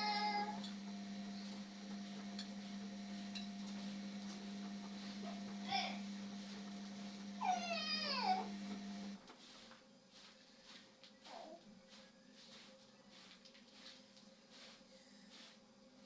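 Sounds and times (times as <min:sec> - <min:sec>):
steady low hum: 0:00.0 - 0:16.0
cat meowing: 0:07.4 - 0:08.5.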